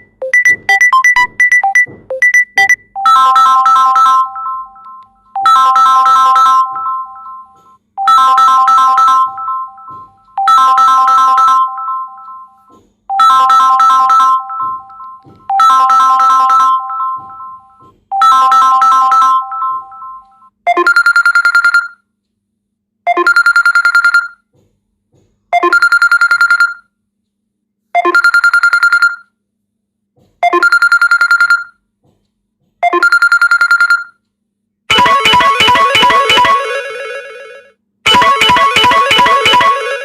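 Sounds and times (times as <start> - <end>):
electronic ringtone melody: 0.0 - 21.9, 34.9 - 40.0
rapid pulse ringtone: 0.0 - 22.0, 23.1 - 24.4, 25.5 - 26.8, 28.0 - 29.2, 30.4 - 31.8, 32.8 - 34.2, 34.9 - 40.0
plucked-string ringtone melody: 0.3 - 20.5, 34.9 - 40.0.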